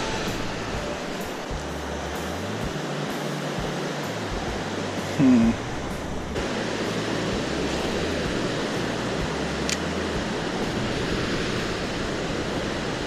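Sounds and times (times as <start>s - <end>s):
fast-flowing river water: 0.0s - 13.0s
wind on microphone: 3.6s - 13.0s.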